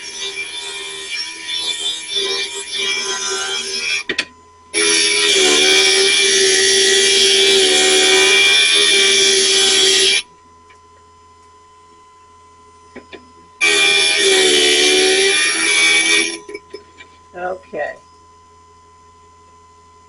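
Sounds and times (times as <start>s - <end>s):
glass grinder grinding glass: 0.0s - 10.3s, 13.0s - 17.1s
grinder motor hum: 0.0s - 10.3s, 12.9s - 17.0s.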